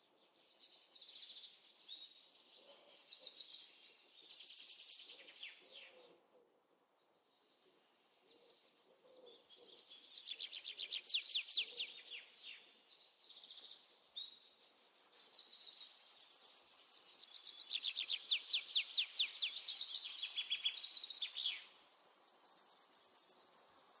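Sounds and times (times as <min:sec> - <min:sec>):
bird chirps: 0:10.4 - 0:12.6, 0:13.4 - 0:24.0
high insect drone: 0:19.5 - 0:24.0.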